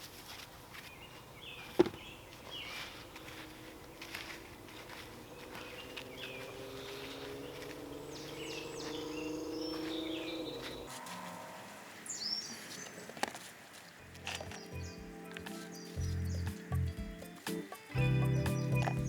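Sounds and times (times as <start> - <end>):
songbirds chirping: 0.0 - 19.0.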